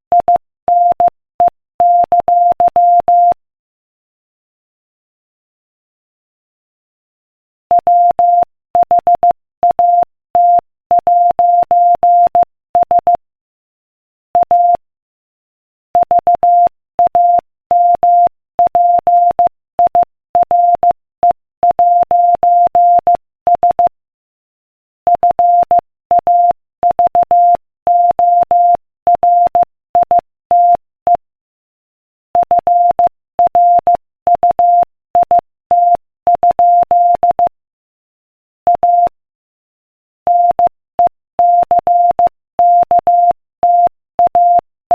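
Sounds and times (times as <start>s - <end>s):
morse code beeps: 7.7s - 13.2s, 14.4s - 14.8s, 16.0s - 23.9s, 25.1s - 31.2s, 32.4s - 37.5s, 38.7s - 39.2s, 40.3s - 44.6s.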